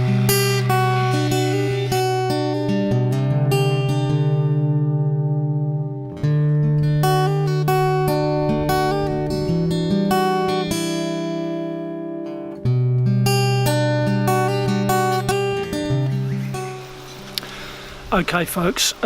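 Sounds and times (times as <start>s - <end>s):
acoustic guitar strumming: 0.0s - 19.0s.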